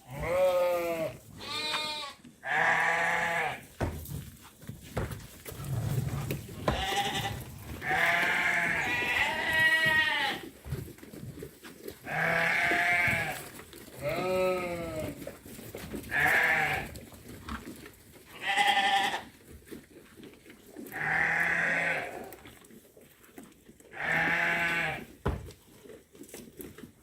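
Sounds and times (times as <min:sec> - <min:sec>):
sheep bleating: 0:00.0 - 0:03.7, 0:06.6 - 0:10.5, 0:12.0 - 0:13.4, 0:14.0 - 0:15.2, 0:16.1 - 0:16.9, 0:18.3 - 0:19.3, 0:20.9 - 0:22.4, 0:23.9 - 0:25.1.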